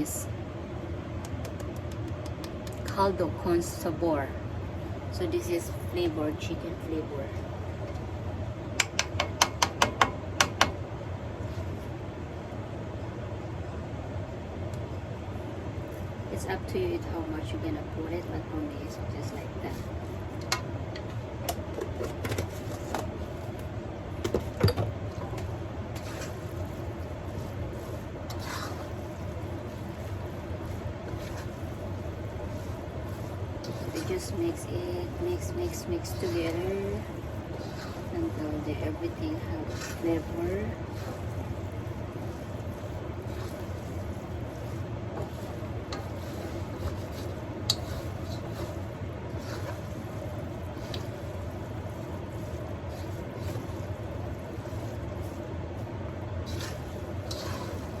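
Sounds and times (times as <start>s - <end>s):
steady low hum: 0.0s - 58.0s
utensil knocking against a bowl: 8.8s - 10.8s
steady low rumble: 10.1s - 58.0s
utensil scraping: 25.1s - 58.0s.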